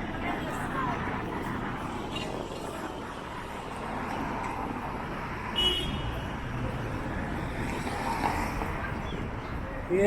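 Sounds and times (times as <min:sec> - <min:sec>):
street traffic passing: 0:00.0 - 0:10.0.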